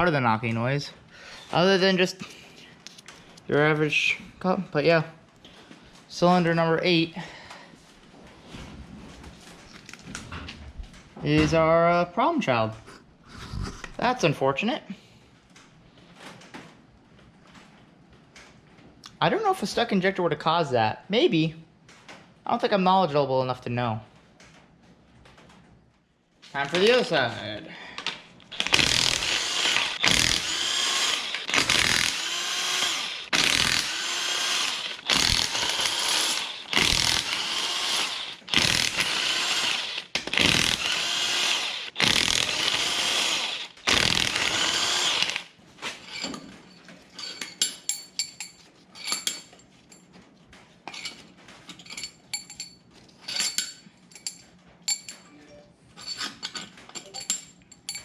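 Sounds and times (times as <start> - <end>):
powered wrench bursts: 28.5 - 45.5.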